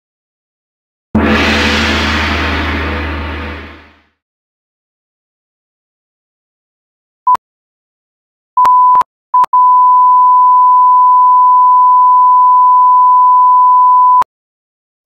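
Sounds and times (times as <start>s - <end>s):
electronic beep tone: 8.6s - 14.2s.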